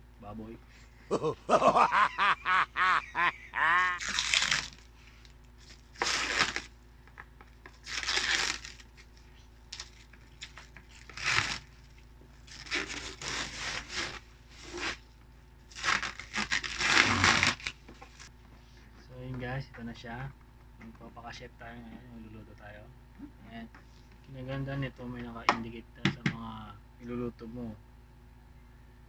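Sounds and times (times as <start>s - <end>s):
plastic packaging crinkling and tearing: 3.6s - 6.8s, 7.6s - 15.0s, 15.7s - 18.3s.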